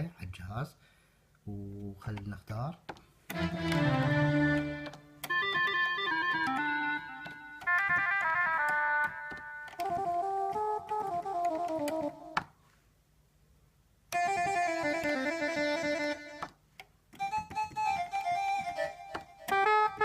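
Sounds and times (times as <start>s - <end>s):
keyboard held chord with bass: 3.3s - 12.4s, 14.1s - 16.5s, 17.2s - 20.0s
keyboard single stepping notes: 3.3s - 12.6s, 14.1s - 20.0s.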